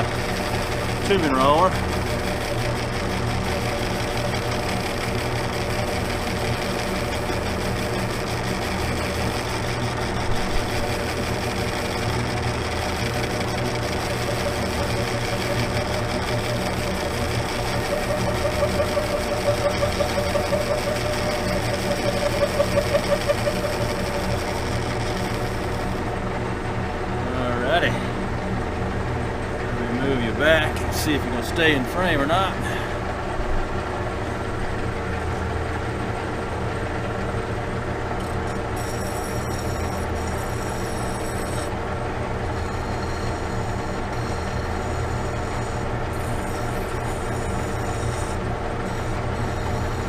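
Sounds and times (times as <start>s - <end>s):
metal lathe humming: 0.0s - 50.0s
pulsing tone: 13.8s - 25.9s, 38.8s - 41.7s.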